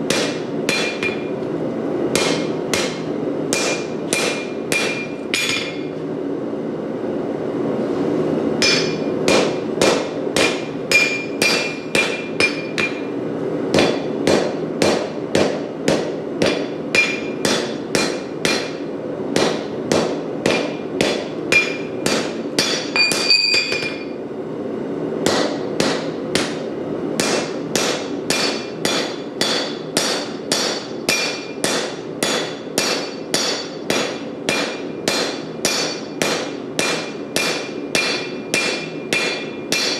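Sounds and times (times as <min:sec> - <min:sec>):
propane forge running: 0:00.0 - 0:39.9
hammer striking steel on anvil: 0:00.1 - 0:01.4, 0:02.1 - 0:06.0, 0:08.6 - 0:24.2, 0:25.2 - 0:39.9.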